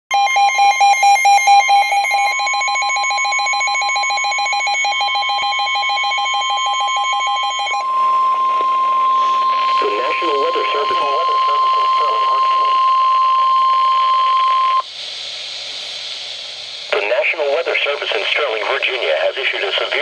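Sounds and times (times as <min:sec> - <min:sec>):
steady high alarm tone: 0:00.1 - 0:14.9
warbling digital data tones: 0:00.8 - 0:14.9.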